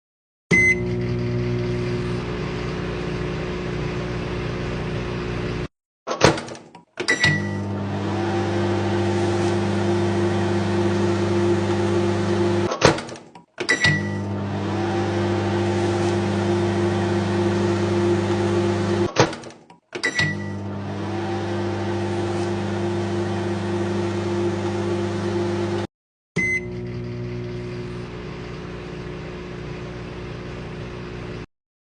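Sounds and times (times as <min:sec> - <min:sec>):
short beep: 0:00.5 - 0:00.9
microwave oven humming: 0:00.6 - 0:05.7, 0:07.2 - 0:12.7, 0:13.8 - 0:19.1, 0:20.2 - 0:31.5.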